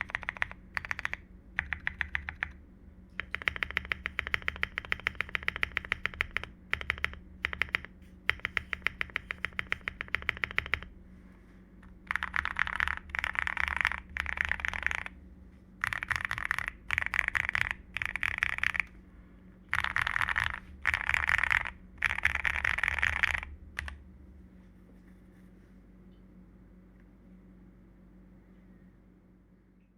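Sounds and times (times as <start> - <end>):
mechanical keyboard typing: 0.0 - 10.9, 11.8 - 15.2, 15.8 - 19.0, 19.7 - 24.0.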